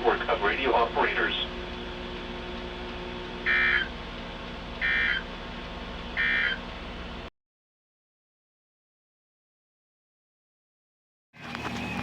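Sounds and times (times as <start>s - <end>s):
radio hiss: 0.0s - 6.7s
digital data bursts: 3.3s - 4.0s, 4.8s - 5.3s, 6.2s - 6.6s.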